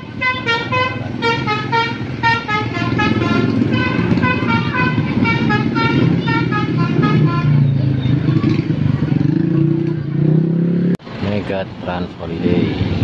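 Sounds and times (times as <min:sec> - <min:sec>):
multi-tone air horn melody: 0:00.0 - 0:07.7
bus engine noise: 0:00.0 - 0:13.0.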